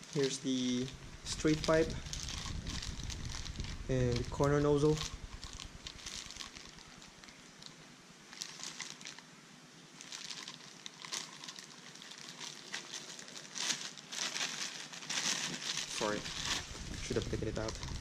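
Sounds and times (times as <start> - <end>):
plastic packaging crinkling: 0.0 - 9.3, 9.9 - 18.0.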